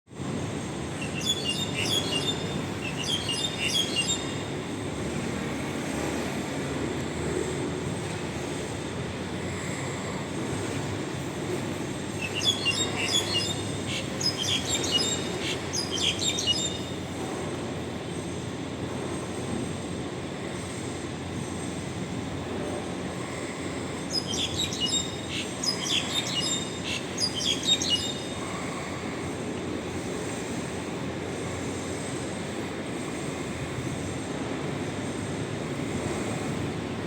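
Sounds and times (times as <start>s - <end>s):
bird chirping loudly: 1.0s - 4.4s, 12.2s - 16.9s, 24.1s - 28.4s.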